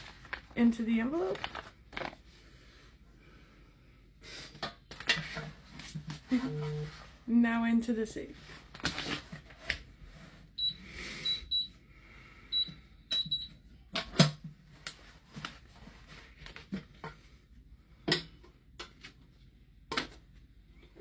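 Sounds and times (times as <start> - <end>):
keypad beeps: 6.3 - 6.9, 12.5 - 13.5.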